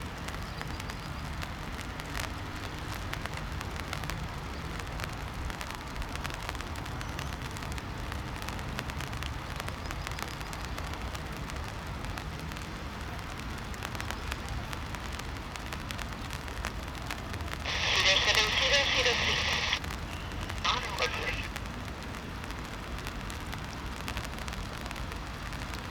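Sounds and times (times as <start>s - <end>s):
crackles: 0.0s - 25.9s.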